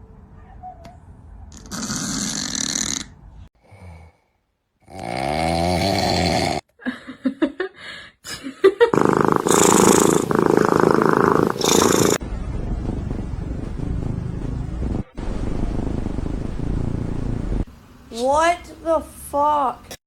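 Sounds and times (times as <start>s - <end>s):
cats snoring: 1.5s - 4.2s, 4.8s - 6.7s, 8.9s - 12.2s.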